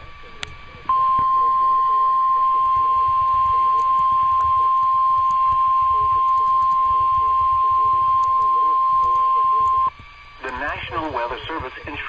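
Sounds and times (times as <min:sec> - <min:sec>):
faint radio static: 0:00.0 - 0:12.0
high-pitched alarm tone: 0:00.9 - 0:09.9.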